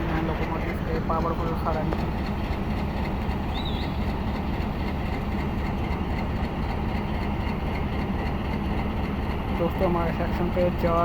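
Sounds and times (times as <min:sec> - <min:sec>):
diesel locomotive idling: 0:00.0 - 0:11.0.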